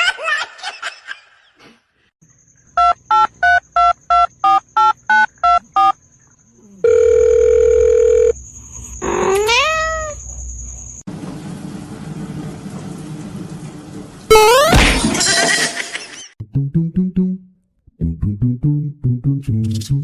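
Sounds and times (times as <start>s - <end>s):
animal cry rising and falling: 9.0s - 10.2s.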